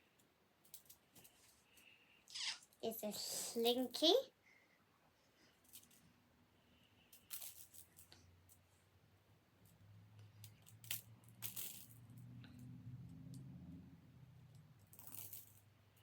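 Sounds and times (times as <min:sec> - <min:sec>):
slinky coils clicking and rattling: 0:00.0 - 0:04.2, 0:06.9 - 0:08.8, 0:09.6 - 0:13.5, 0:14.3 - 0:16.0.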